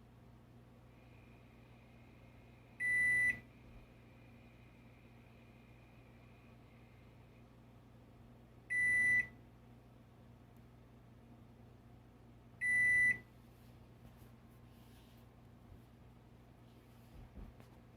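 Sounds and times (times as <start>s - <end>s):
microwave control panel beeping: 2.8s - 3.4s, 8.7s - 9.4s, 12.6s - 13.2s.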